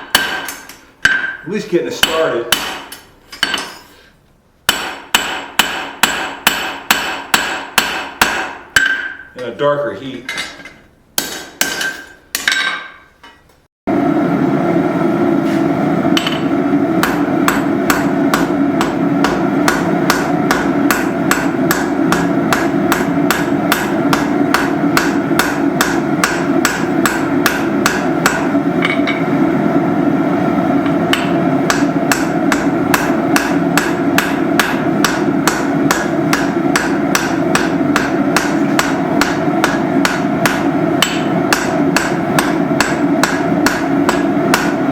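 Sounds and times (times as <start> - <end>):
hammer striking rivet on anvil: 0.0 - 1.4, 2.0 - 3.8, 4.7 - 9.3, 10.4 - 13.4, 16.2 - 29.3, 31.1 - 44.8
continuous roar: 13.9 - 44.9.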